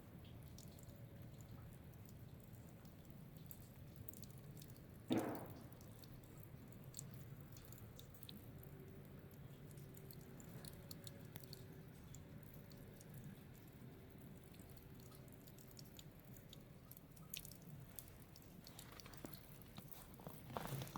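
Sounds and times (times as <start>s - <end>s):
faint steady hum: 0.0s - 20.9s
dull thump: 5.1s - 5.7s.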